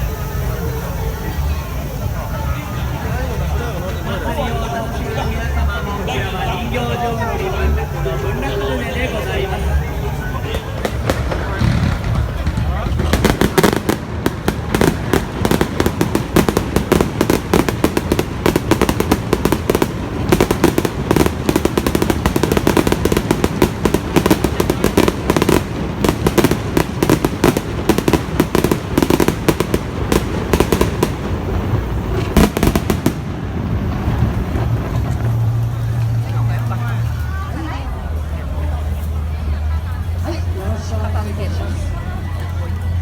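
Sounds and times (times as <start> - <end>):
fireworks bangs and crackles: 0.0 - 43.0.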